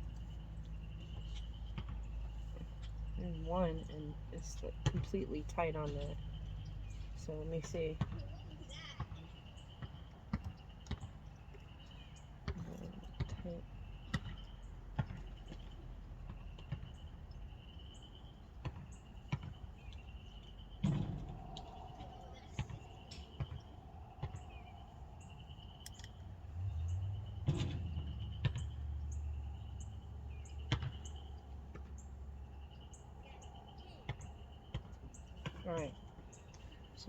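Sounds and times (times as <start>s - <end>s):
low steady hum: 0.0s - 9.0s.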